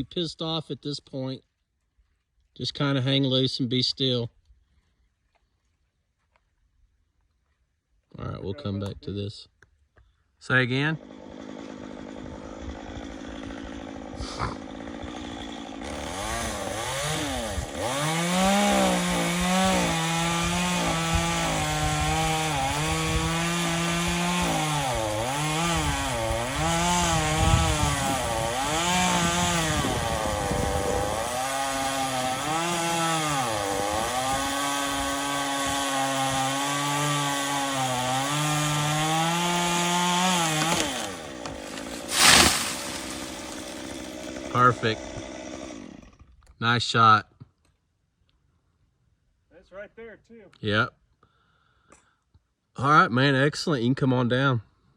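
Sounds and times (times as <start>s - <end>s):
chainsaw cutting wood: 10.9s - 46.6s.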